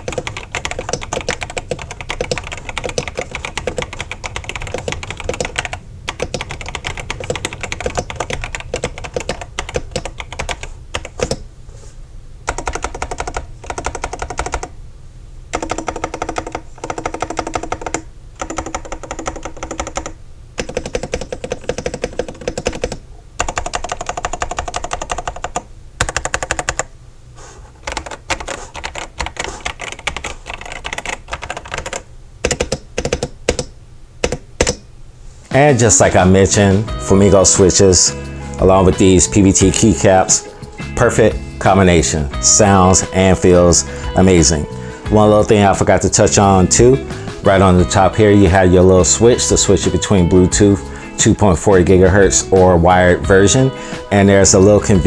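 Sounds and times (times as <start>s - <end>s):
mechanical keyboard typing: 0.0s - 11.4s, 12.5s - 14.7s, 15.5s - 26.9s, 27.8s - 34.8s.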